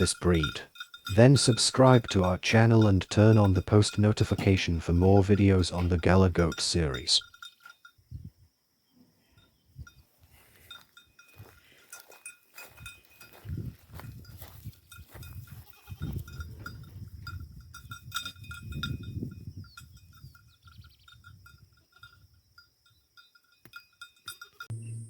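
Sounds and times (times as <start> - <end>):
goats moving about: 0.0 - 7.8, 9.8 - 19.0.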